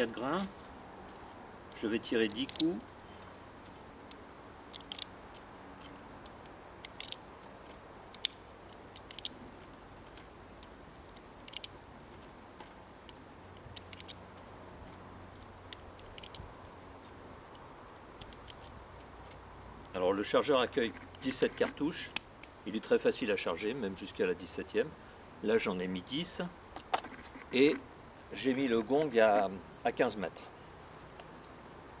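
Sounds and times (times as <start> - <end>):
cartridges clicking into magazine: 2.3 - 9.4, 11.2 - 14.2.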